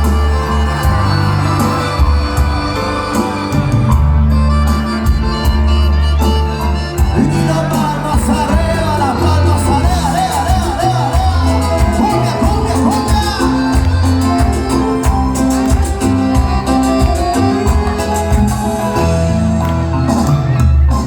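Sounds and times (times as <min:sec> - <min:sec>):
live band playing dance music: 0:00.0 - 0:21.0
person singing: 0:07.0 - 0:18.7.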